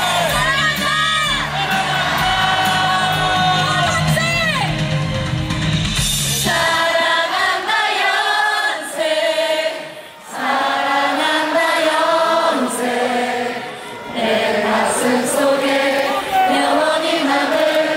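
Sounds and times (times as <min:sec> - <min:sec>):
crowd singing unaccompanied: 0:00.0 - 0:04.2, 0:06.2 - 0:17.9
bass-heavy backing music: 0:00.0 - 0:06.8.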